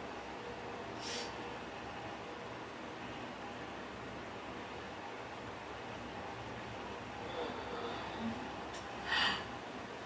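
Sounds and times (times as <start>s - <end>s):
person breathing through nose: 1.0s - 1.4s, 9.0s - 9.5s.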